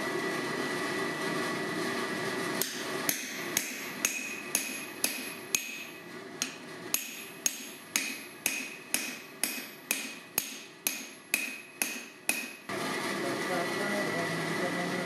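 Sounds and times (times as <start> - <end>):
hammer striking steel on anvil: 2.6 - 12.7.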